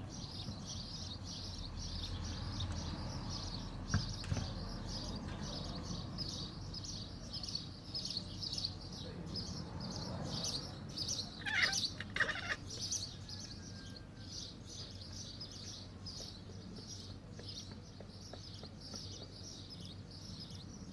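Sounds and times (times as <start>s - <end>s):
small birds twittering: 0.0s - 20.9s
cat chattering: 11.3s - 12.8s.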